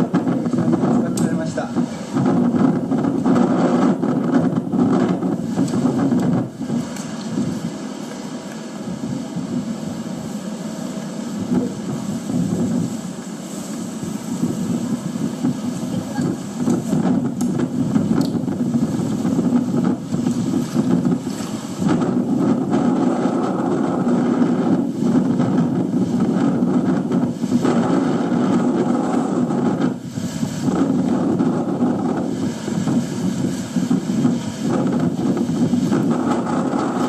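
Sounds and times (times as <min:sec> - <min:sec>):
strong wind gusts: 0:00.0 - 0:37.0
wind buffeting microphone: 0:00.0 - 0:37.0.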